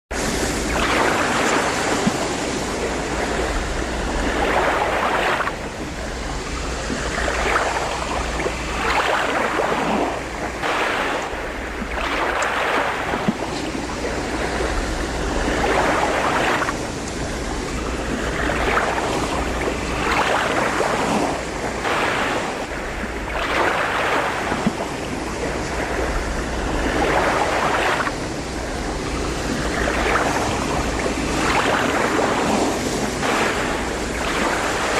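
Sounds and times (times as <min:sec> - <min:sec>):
low wind rumble: 0:00.1 - 0:34.9
ocean waves breaking: 0:00.1 - 0:34.9.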